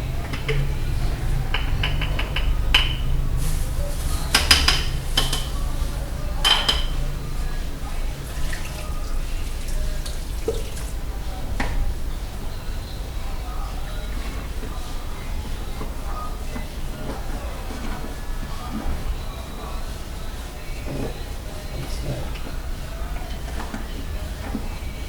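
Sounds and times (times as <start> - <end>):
steady low hum: 0.0 - 25.0
dishes and cutlery clinking: 0.1 - 7.4.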